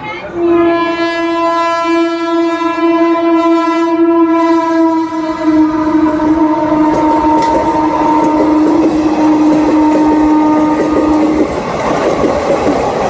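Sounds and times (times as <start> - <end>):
deep train horn blast: 0.0 - 11.6
train running rumble: 4.5 - 13.0.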